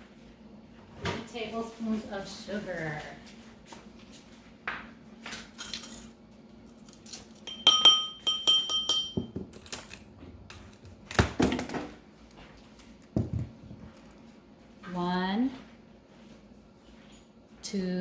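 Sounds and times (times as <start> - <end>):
spoon clinking on kitchenware: 7.4 - 9.4.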